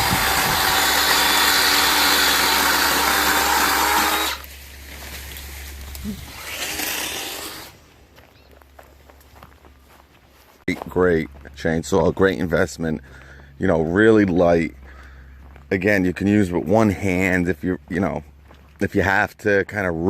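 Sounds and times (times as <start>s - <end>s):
cordless chainsaw cutting: 0.0s - 4.5s, 5.8s - 7.8s.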